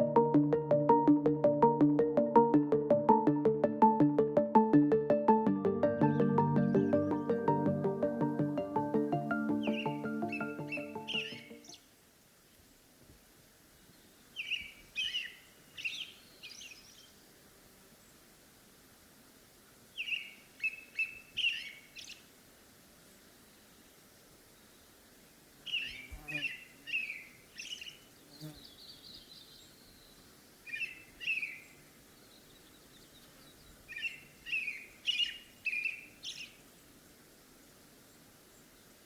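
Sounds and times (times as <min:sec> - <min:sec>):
songbird singing: 0:05.3 - 0:11.8, 0:25.7 - 0:36.7.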